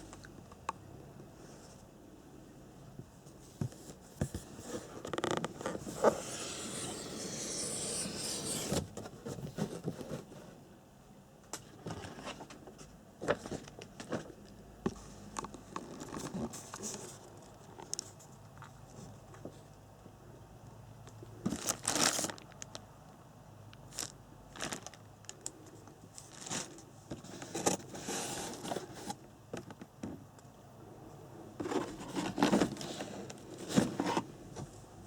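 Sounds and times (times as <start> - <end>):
packaging rubbing and scraping: 4.4 - 10.4, 26.2 - 29.2, 31.6 - 34.3.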